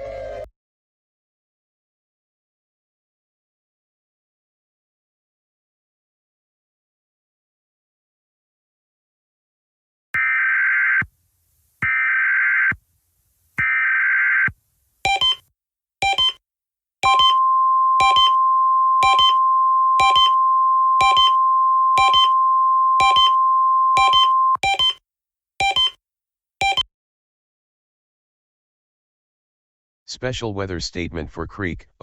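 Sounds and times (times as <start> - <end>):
short electronic beeps: 15.1 - 16.4, 17.0 - 25.0, 25.6 - 26.0, 26.6 - 26.9
buzzing alert header data: 17.0 - 17.4, 18.0 - 18.4, 19.0 - 19.4, 20.0 - 20.4, 21.0 - 21.4, 22.0 - 22.4, 23.0 - 23.4
steady single-pitch alert tone: 17.0 - 25.0.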